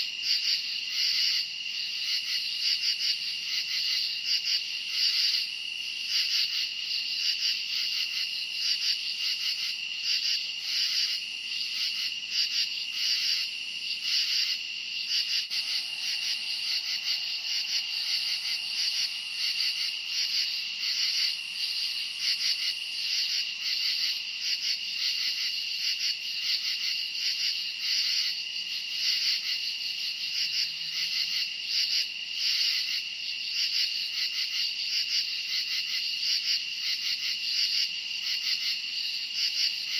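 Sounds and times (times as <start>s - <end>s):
crickets chirping rhythmically: 0.0s - 39.9s.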